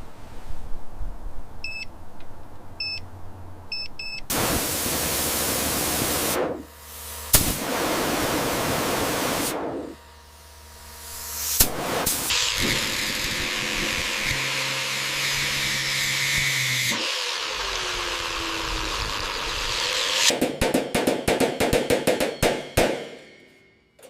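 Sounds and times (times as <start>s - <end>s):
short electronic beeps: 1.6s - 1.9s, 2.8s - 3.0s, 3.7s - 4.3s
loud hissing bursts: 4.3s - 23.3s.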